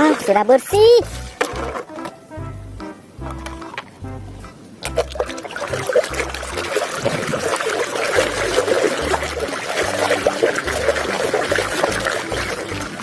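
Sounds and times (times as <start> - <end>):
water trickling and sloshing: 0.0 - 2.1, 4.8 - 13.0.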